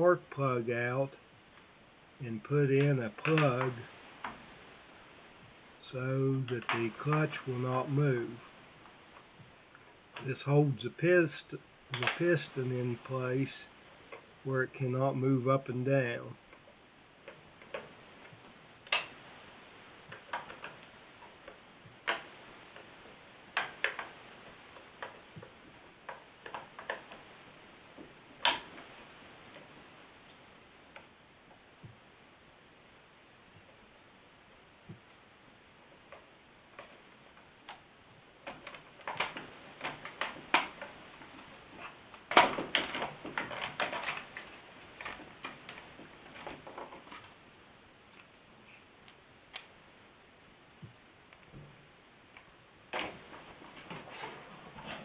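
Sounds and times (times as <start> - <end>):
faint steady hiss: 0.0 - 55.0.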